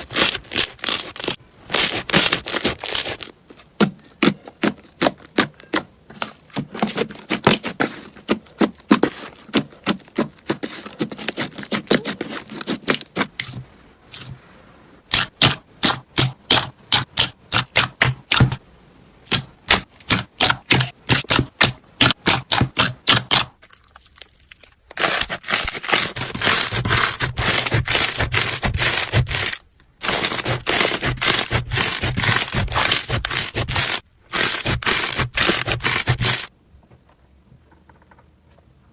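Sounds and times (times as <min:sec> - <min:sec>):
slime crunching: 0:23.2 - 0:36.5.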